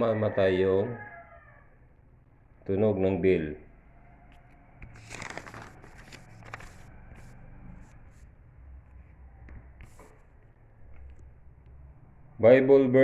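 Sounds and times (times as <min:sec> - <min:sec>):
faint rustling and light clicks: 0:04.3 - 0:08.3, 0:08.9 - 0:11.8.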